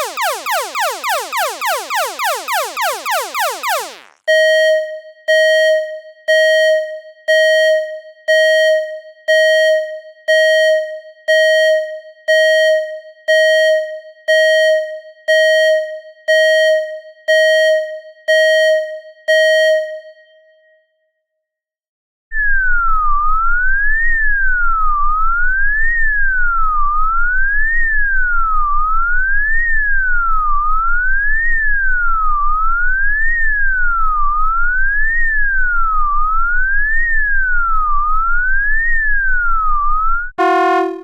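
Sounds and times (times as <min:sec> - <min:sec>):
siren wailing: 0:00.0 - 0:04.2, 0:40.4 - 0:41.0
bell-like electronic alarm tone: 0:00.0 - 0:05.6, 0:40.4 - 0:41.0
falling-sweep alarm: 0:00.0 - 0:20.8, 0:40.4 - 0:41.0.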